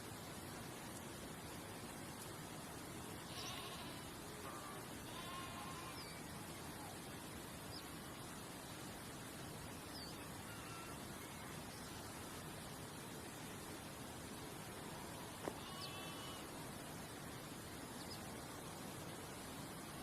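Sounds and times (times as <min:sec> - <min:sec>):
background hiss: 0:00.0 - 0:20.0
faint bird chirps and whistles: 0:04.4 - 0:07.0, 0:09.8 - 0:11.9.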